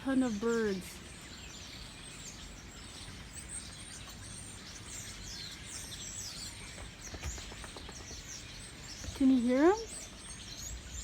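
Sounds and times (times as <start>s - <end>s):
flock of small birds chirping: 0.0s - 11.0s
outdoor background noise: 0.0s - 11.0s.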